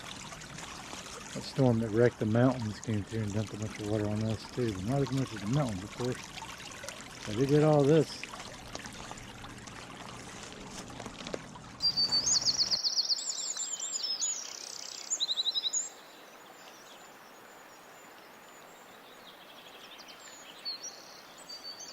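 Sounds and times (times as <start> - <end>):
creek rushing: 0.0 - 14.1
songbird chirping: 11.8 - 21.9.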